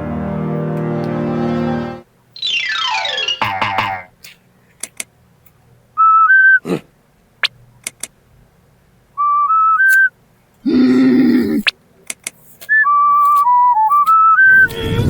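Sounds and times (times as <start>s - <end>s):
whistle-like rising tunes: 2.4s - 4.0s, 12.7s - 15.0s
sharp clicks: 3.4s - 5.6s, 7.4s - 8.2s.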